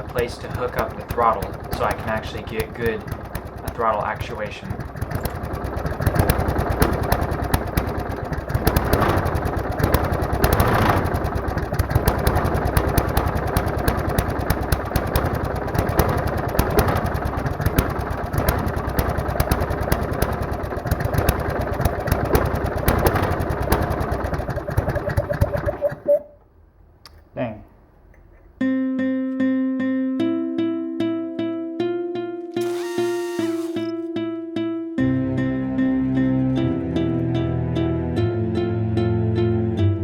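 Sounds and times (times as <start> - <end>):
lawnmower engine running: 0.0 - 26.2, 32.6 - 33.9.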